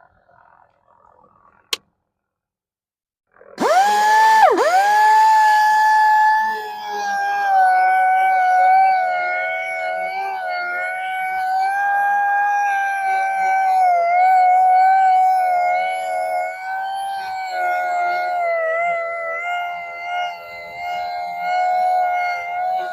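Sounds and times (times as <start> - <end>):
power tool whining: 3.6 - 22.9.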